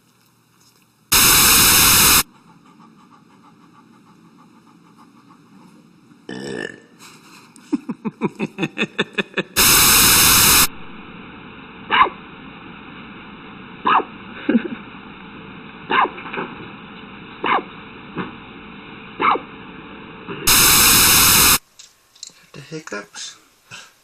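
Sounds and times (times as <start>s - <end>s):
background hum: 0.0s - 24.0s
burst of static noise: 1.1s - 2.3s, 8.6s - 22.1s
short pulses: 9.6s - 10.7s
dog hiccuping: 11.9s - 12.2s, 13.8s - 14.1s, 15.9s - 16.2s, 17.4s - 17.7s, 19.2s - 19.5s.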